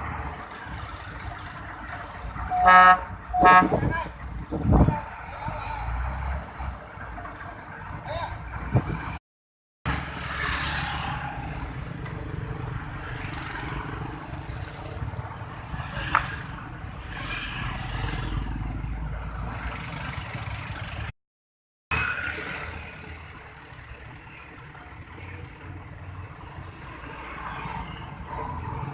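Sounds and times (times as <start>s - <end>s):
vehicles passing: 0.0s - 9.2s, 9.9s - 21.2s, 21.9s - 28.9s.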